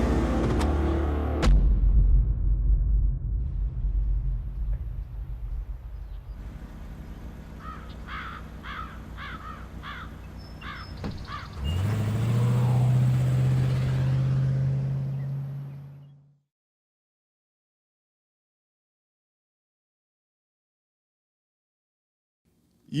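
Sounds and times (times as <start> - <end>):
low-pitched motor drone: 0.0 - 3.3
low rumble: 0.0 - 7.2
bird cawing: 7.5 - 11.7.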